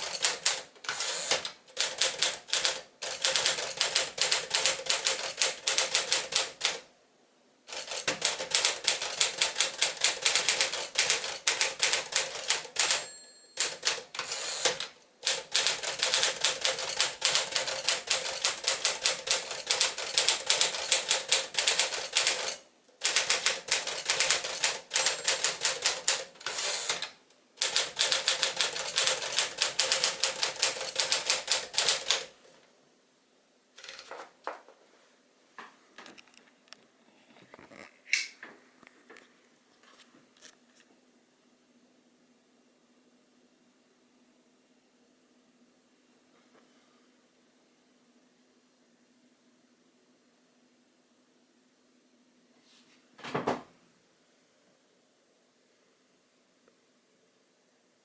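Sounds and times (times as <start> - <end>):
manual typewriter key strikes: 0.0 - 6.8, 7.7 - 32.3.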